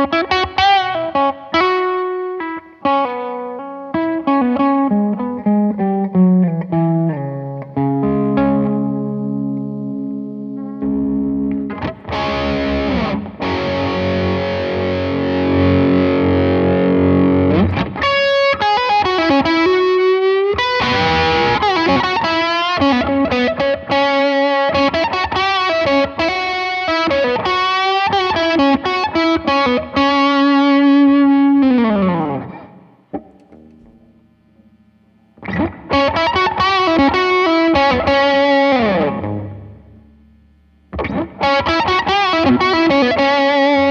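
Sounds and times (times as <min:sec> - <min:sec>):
electric guitar chords: 0:00.0 - 0:43.9
electric guitar lead lines: 0:00.0 - 0:43.9.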